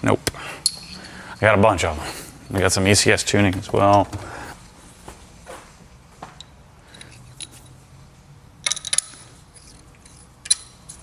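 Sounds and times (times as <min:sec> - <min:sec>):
small metal parts clinking: 0:00.6 - 0:01.5, 0:06.4 - 0:07.8, 0:08.6 - 0:11.0.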